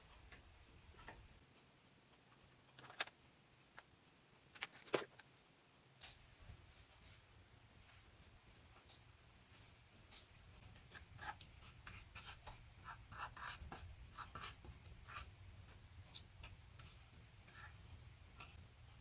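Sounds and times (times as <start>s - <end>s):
scrapes and rustles of food preparation: 4.4s - 19.0s.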